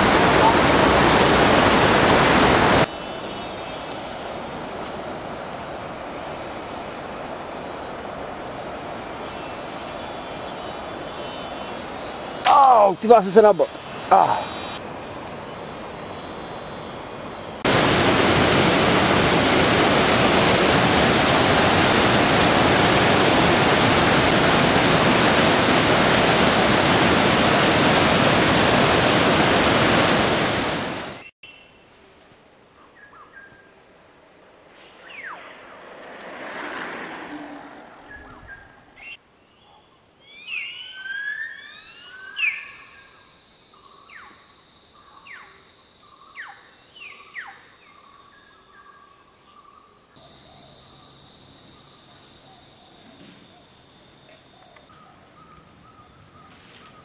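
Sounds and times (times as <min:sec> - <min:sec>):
waterfall roaring: 0:00.0 - 0:02.9, 0:17.7 - 0:31.2.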